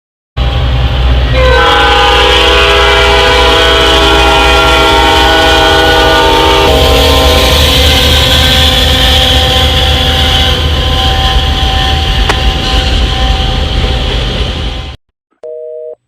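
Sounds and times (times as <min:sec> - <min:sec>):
train noise: 0:00.4 - 0:15.0
train horn chord: 0:01.3 - 0:07.5.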